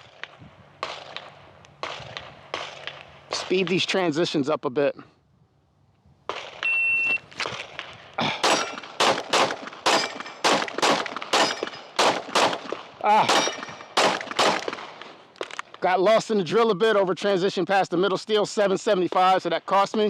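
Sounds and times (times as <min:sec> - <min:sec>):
pistol shots: 0:00.0 - 0:03.8, 0:07.4 - 0:15.6
shot timer beep: 0:06.6 - 0:07.2.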